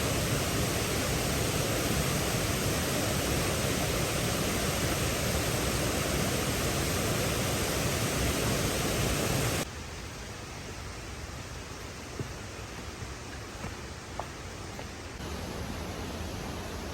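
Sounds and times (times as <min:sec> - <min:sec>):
waterfall roaring: 0:00.0 - 0:09.7
steady hiss: 0:00.0 - 0:16.9.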